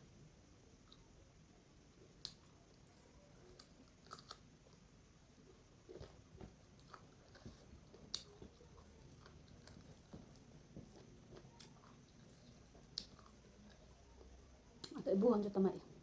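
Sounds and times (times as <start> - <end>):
chewing and biting food: 3.5 - 4.5.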